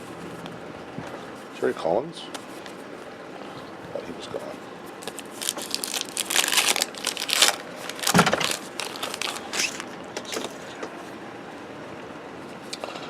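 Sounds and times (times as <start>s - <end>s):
plastic wrapper crinkling: 4.9s - 10.6s.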